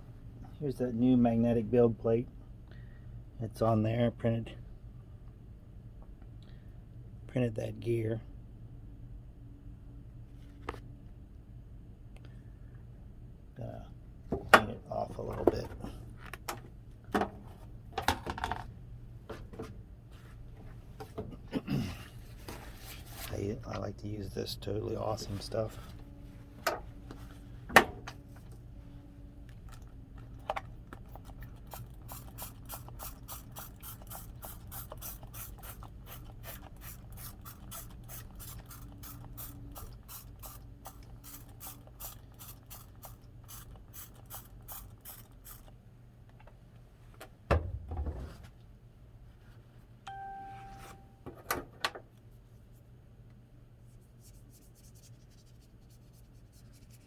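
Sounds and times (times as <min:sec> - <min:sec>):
brief metallic ring: 0:50.1 - 0:51.2.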